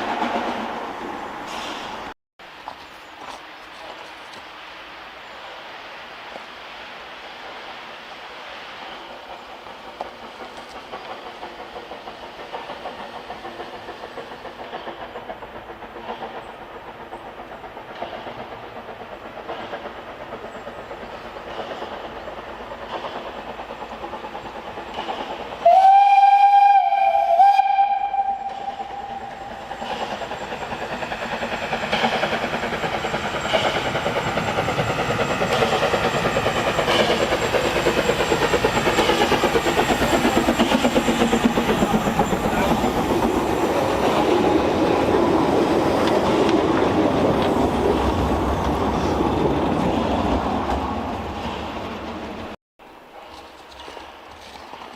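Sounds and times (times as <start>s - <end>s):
steam locomotive chuffing: 7.2s - 54.9s
train clatter: 8.8s - 54.9s
steam whistle blast: 25.6s - 29.5s.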